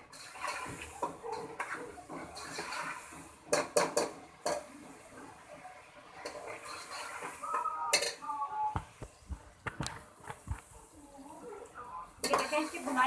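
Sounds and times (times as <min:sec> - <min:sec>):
spoon scraping and stirring meat: 0:00.0 - 0:04.8, 0:06.1 - 0:08.2, 0:12.2 - 0:13.0.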